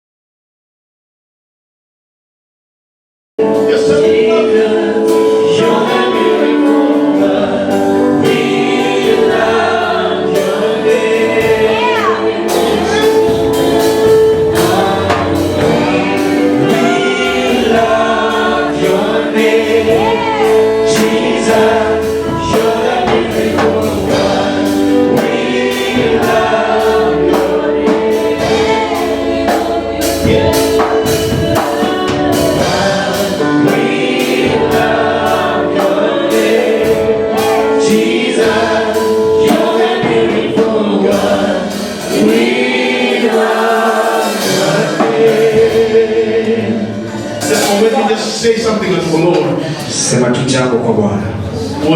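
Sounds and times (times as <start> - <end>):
gospel choir singing: 3.4 - 51.9
held instrumental notes: 3.4 - 51.9
percussion hits: 5.1 - 50.4.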